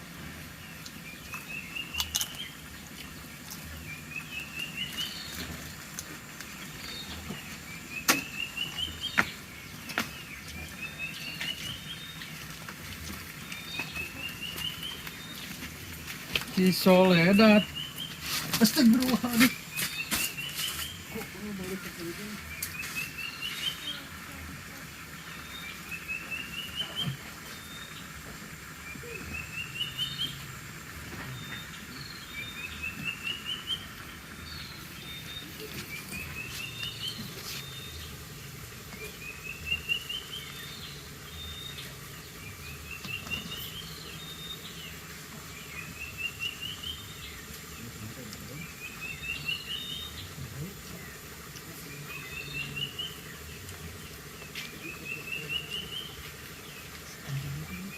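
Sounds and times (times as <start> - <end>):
bird singing a repeated phrase: 6.8 - 9.4, 16.5 - 24.6, 25.2 - 28.0, 28.9 - 30.4, 45.6 - 57.9.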